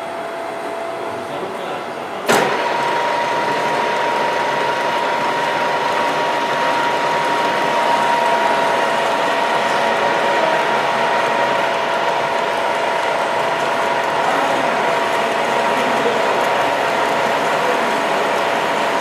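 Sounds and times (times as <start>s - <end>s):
lathe running: 0.0s - 19.0s
sharp clunk: 2.2s - 2.6s.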